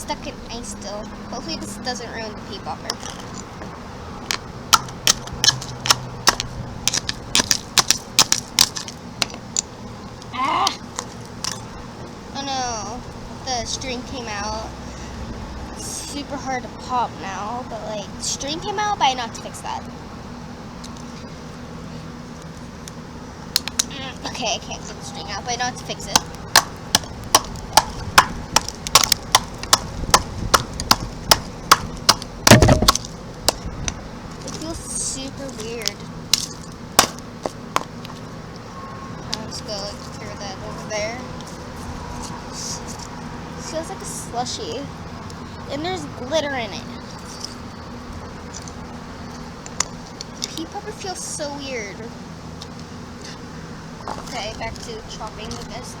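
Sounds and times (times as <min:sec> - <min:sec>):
ice crunching: 0:04.2 - 0:09.4, 0:34.3 - 0:38.2
ice chipping strikes: 0:26.2 - 0:33.2, 0:35.5 - 0:37.2.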